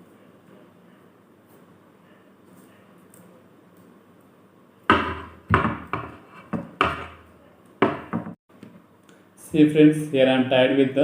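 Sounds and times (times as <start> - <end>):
iron rod knocking on hard surface: 4.9 - 8.4.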